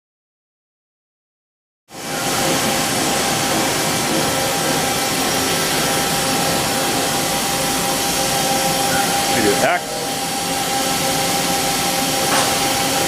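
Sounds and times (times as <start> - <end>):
lathe whirring and whining: 1.9 - 13.0.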